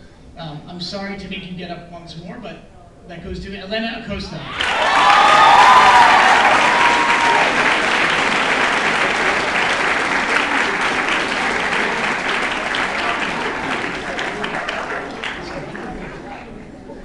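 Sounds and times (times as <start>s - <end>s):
person cheering: 4.5s - 7.8s
audience applauding: 4.6s - 16.6s.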